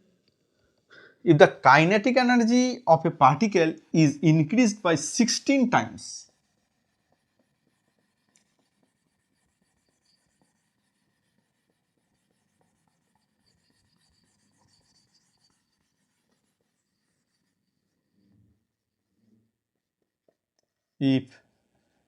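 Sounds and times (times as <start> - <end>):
pen scratching while writing: 5.3 - 18.8.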